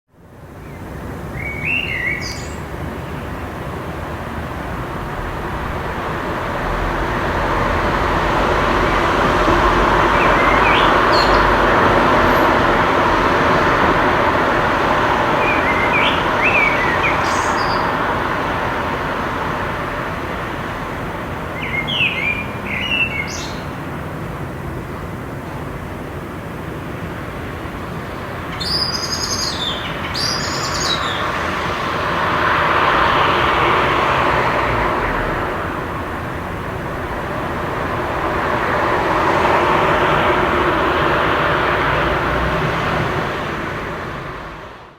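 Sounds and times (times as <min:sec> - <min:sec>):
distant city traffic: 0:00.1 - 0:44.9
songbirds chirping: 0:00.5 - 0:05.2, 0:07.8 - 0:12.9, 0:13.5 - 0:19.8, 0:20.4 - 0:24.7, 0:28.1 - 0:32.0.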